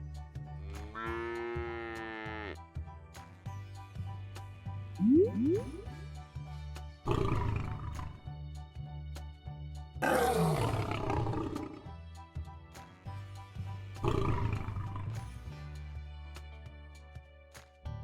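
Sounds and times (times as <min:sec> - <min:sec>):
background music: 0:00.0 - 0:18.0
lion roaring: 0:07.1 - 0:08.2, 0:10.0 - 0:11.9, 0:14.0 - 0:15.2.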